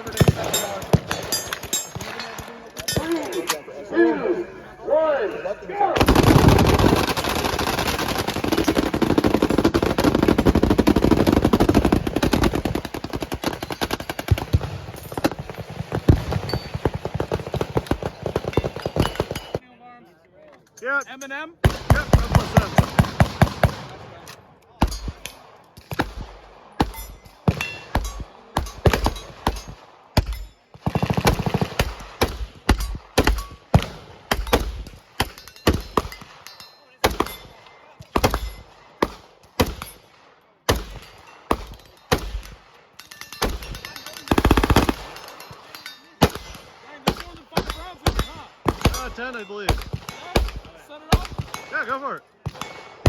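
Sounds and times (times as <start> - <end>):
automatic gunfire burst: 6.0 - 19.5, 44.3 - 45.3
machine-gun fire: 6.0 - 19.6, 21.6 - 24.0, 30.8 - 36.2, 43.4 - 45.3.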